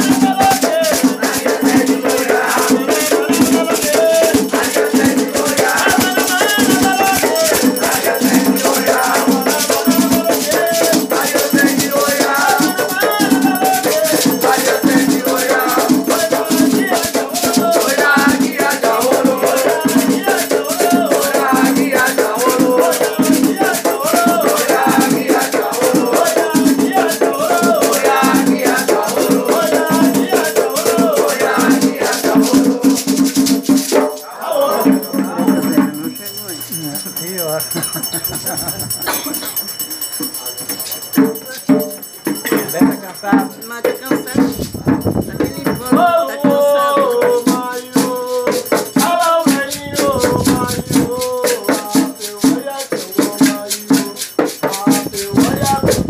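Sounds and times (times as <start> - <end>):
gourd shaker: 0.0 - 41.7, 43.6 - 56.0
drum rhythm: 0.0 - 56.0
voices singing: 0.0 - 56.0.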